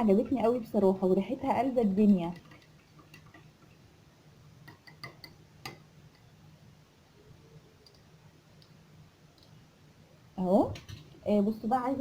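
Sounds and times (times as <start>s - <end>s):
tableware clicking and tapping: 4.6s - 6.3s.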